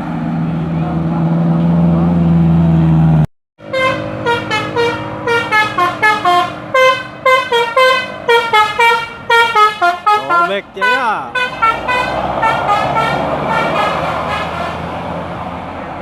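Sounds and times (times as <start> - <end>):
bus horn playing a melody: 3.6 - 15.0.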